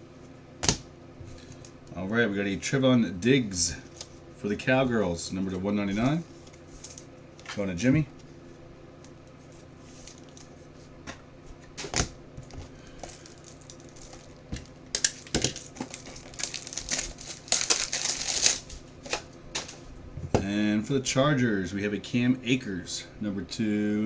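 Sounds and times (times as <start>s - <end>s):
plastic crinkling and rustling: 9.8s - 10.6s, 11.9s - 19.8s.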